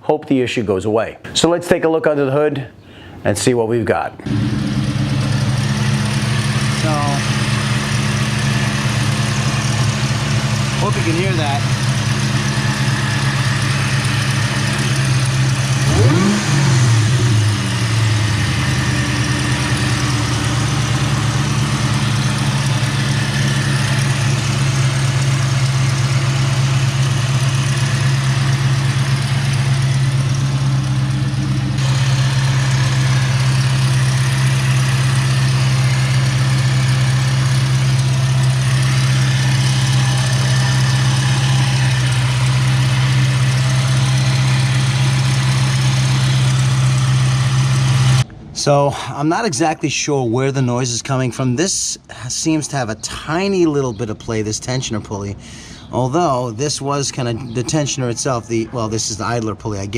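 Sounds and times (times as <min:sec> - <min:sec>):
engine rev blip: 0:04.2 - 0:48.4
car engine idling: 0:04.3 - 0:48.4.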